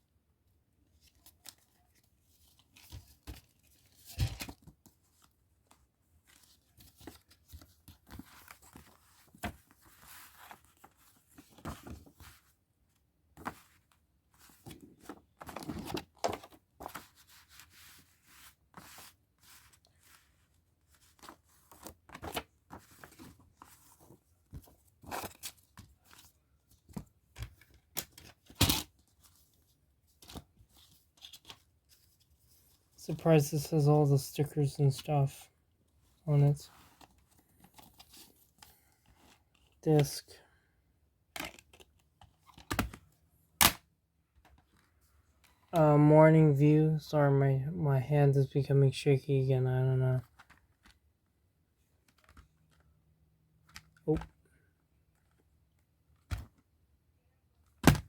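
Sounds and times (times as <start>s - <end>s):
paper rustling and scraping: 13.4s - 26.3s.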